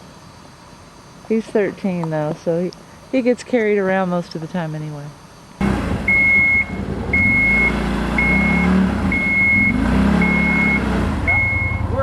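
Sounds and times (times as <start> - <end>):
vehicle engine running: 5.6 - 12.0
reversing alarm beeping: 6.0 - 12.0.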